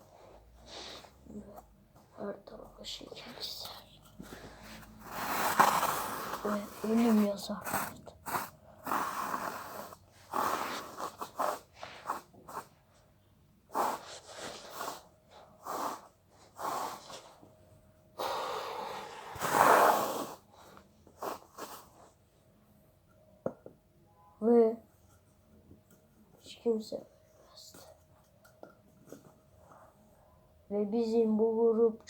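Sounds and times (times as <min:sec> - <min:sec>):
person blowing breathy puffs: 0:08.3 - 0:12.7, 0:13.7 - 0:15.0, 0:15.6 - 0:17.2, 0:18.2 - 0:20.5.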